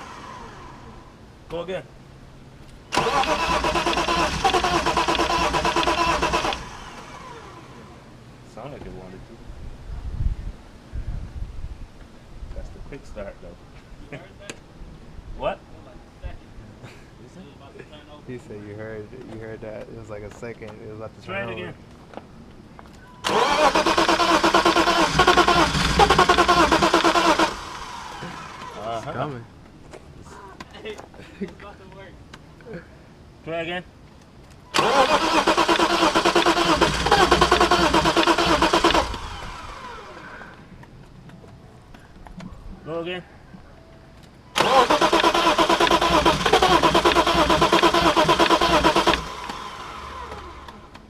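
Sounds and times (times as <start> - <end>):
car engine cranking: 2.8 - 7.6, 23.2 - 28.8, 34.8 - 40.3, 44.5 - 51.0.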